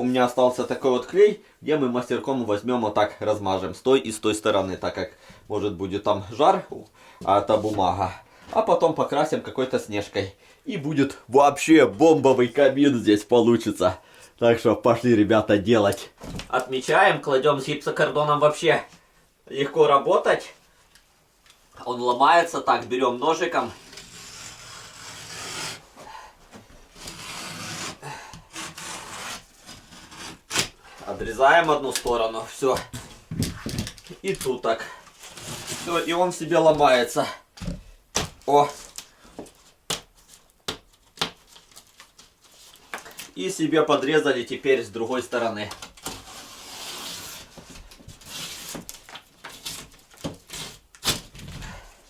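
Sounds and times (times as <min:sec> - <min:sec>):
knife scraping drywall: 0:23.6 - 0:25.8, 0:27.0 - 0:30.8, 0:35.2 - 0:36.2, 0:46.1 - 0:48.9.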